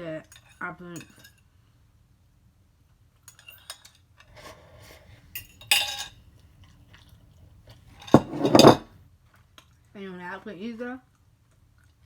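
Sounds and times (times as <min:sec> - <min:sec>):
utensil clatter: 0:08.0 - 0:08.8.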